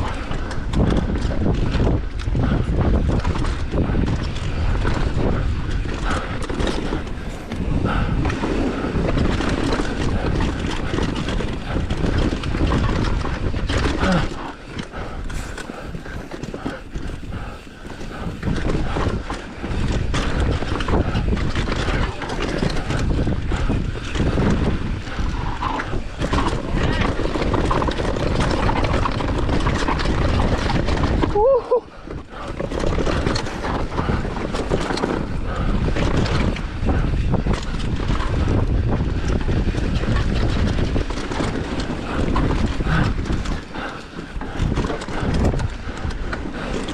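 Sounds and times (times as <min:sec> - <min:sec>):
tyres rumbling over rocks: 0:00.0 - 0:46.9.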